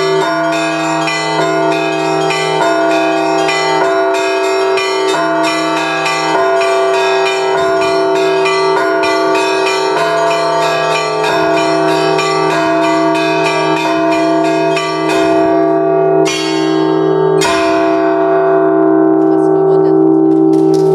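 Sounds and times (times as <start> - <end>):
heavy bell strokes: 0.0 - 20.9
large bells humming: 0.0 - 20.9
small bells striking rapidly: 0.0 - 20.9.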